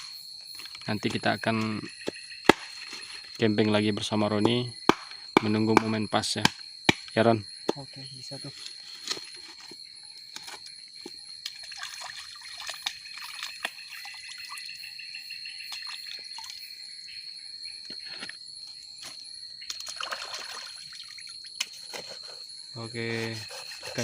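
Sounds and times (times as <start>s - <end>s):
water trickling and pouring: 11.4s - 14.8s, 19.8s - 21.5s.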